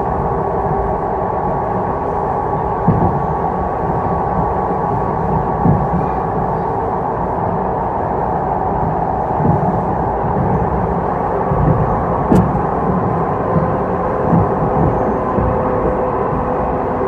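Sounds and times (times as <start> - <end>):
train wheels rumbling on rail: 0.0 - 17.0
low knocks: 11.5 - 16.0.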